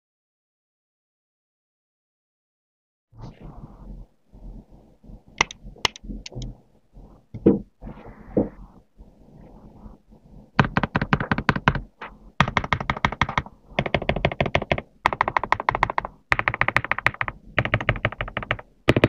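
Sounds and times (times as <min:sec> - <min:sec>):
mechanical keyboard typing: 0:05.4 - 0:06.5, 0:10.6 - 0:19.0.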